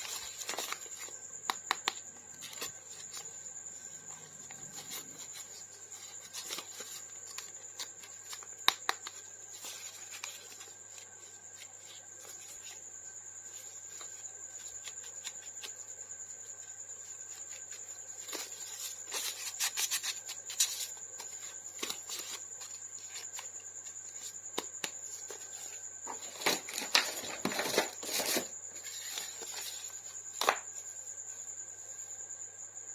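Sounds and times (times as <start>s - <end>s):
plastic packaging rustling: 25.3s - 30.6s.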